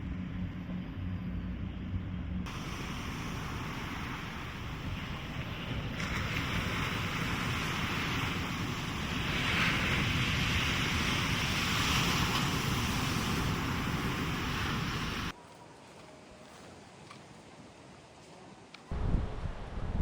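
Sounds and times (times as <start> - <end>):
surf hissing: 2.5 - 15.3
wind buffeting microphone: 18.9 - 20.0.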